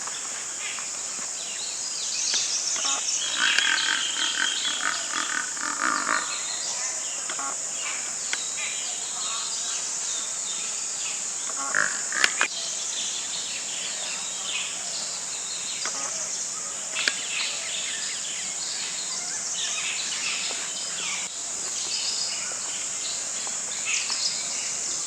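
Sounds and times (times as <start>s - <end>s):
insects buzzing: 0.0s - 25.0s.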